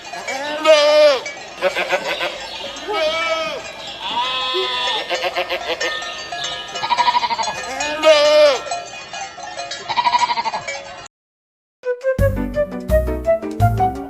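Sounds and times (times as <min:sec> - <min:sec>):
sheep bleating: 0:00.3 - 0:05.9, 0:06.8 - 0:08.7, 0:09.9 - 0:10.6.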